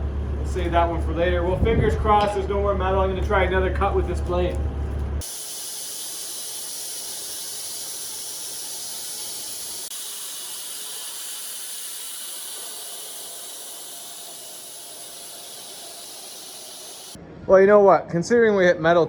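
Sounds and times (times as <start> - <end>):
band saw blade hissing: 5.2 - 17.2.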